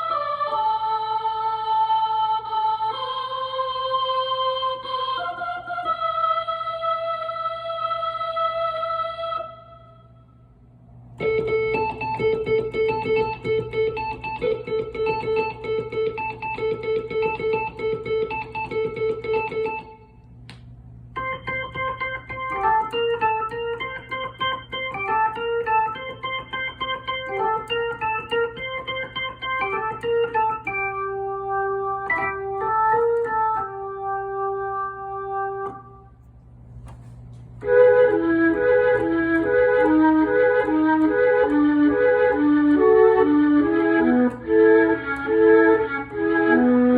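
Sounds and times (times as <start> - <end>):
steady low hum: 0.0 - 46.9
stage keyboard playing: 11.2 - 20.2, 21.1 - 36.2, 37.6 - 46.9.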